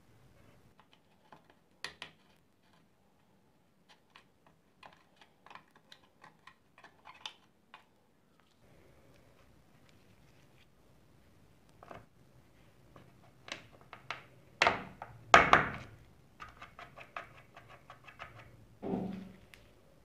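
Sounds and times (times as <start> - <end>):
plastic keyboard parts clicking: 3.9 - 7.9.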